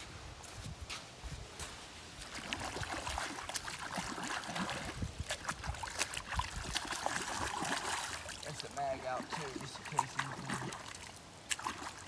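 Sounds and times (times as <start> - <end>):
water pouring and trickling: 2.2 - 12.0.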